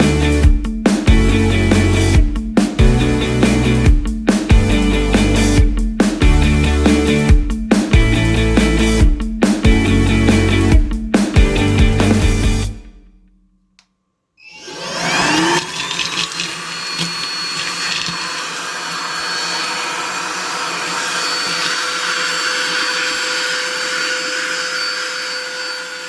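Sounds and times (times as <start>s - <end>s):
handheld vacuum cleaner whining: 14.4s - 26.0s.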